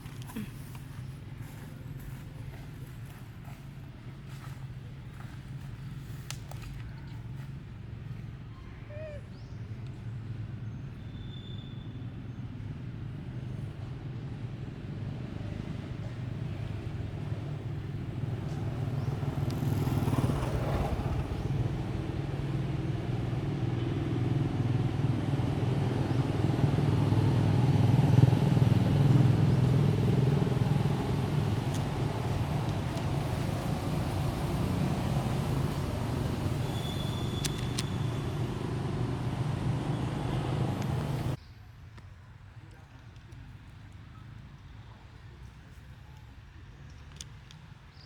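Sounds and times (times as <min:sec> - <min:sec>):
motor engine droning: 0:15.9 - 0:41.4.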